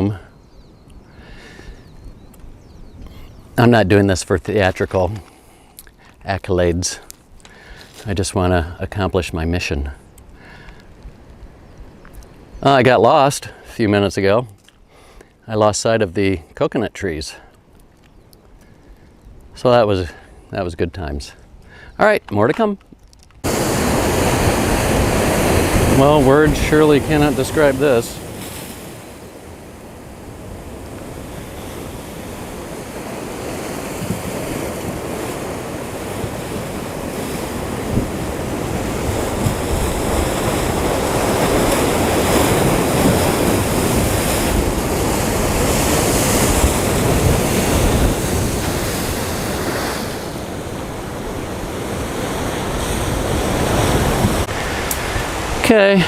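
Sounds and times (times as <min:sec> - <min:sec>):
ocean surf breaking on shore: 0:23.4 - 0:56.0.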